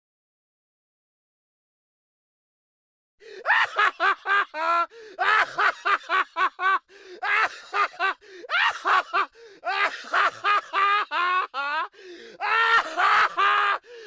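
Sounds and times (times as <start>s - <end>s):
person laughing: 3.5s - 11.9s.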